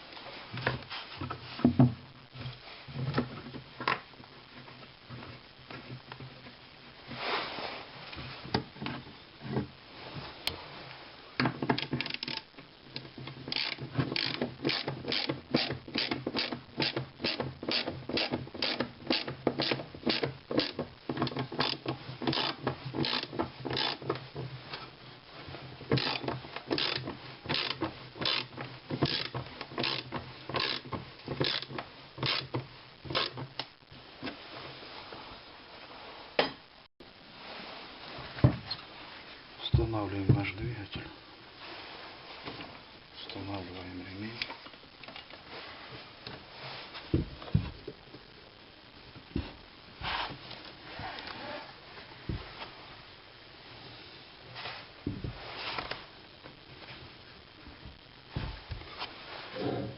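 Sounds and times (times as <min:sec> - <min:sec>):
ratchet wrench clicking: 0:13.5 - 0:20.8, 0:21.6 - 0:24.1, 0:26.0 - 0:32.5.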